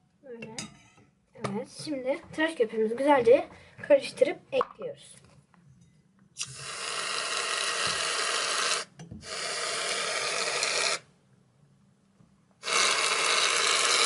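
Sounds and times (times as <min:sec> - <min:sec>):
aerosol foam spraying hiss: 0:06.4 - 0:11.0, 0:12.6 - 0:14.0.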